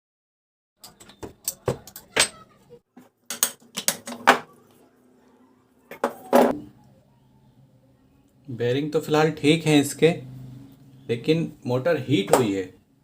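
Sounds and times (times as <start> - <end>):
metal parts clinking and knocking: 0.8 - 2.4.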